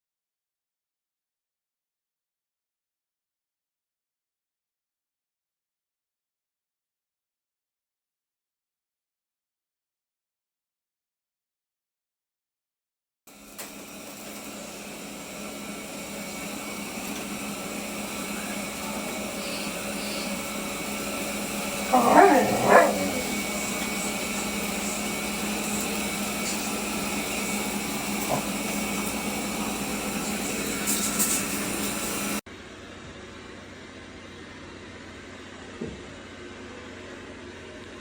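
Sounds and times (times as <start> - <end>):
dog barking: 21.9 - 23.8, 28.2 - 28.6.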